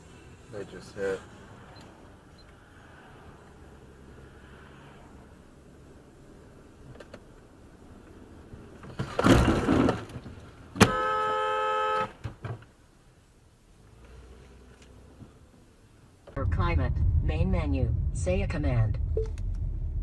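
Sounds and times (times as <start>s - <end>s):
car horn blast: 10.8s - 12.2s.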